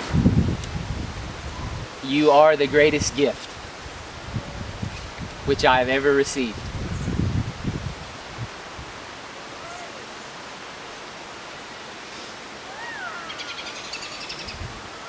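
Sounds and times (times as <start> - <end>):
outdoor background hiss: 0.0 - 15.0
bird chirping trill: 13.2 - 14.6.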